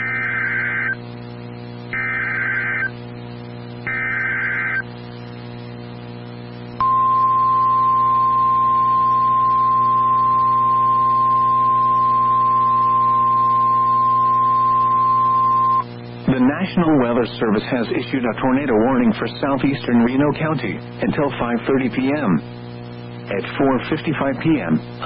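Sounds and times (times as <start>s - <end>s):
low receiver hum: 0.0s - 25.0s
steady single-pitch alarm tone: 6.8s - 15.9s.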